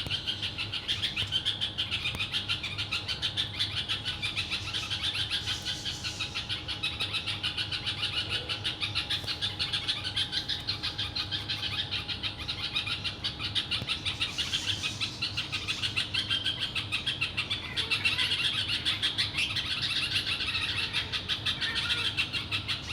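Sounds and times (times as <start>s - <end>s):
flock of small birds chirping: 0.0s - 22.9s.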